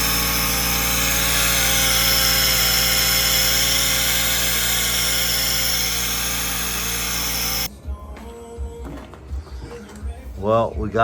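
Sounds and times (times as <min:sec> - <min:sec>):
power tool cutting metal: 0:00.0 - 0:07.7.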